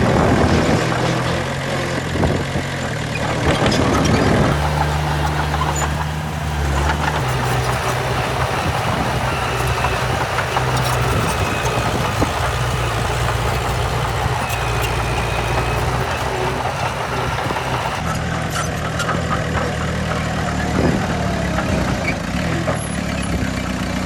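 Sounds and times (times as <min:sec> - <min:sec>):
heavy diesel engine running: 0:04.5 - 0:18.0
thin squeak: 0:04.6 - 0:18.0.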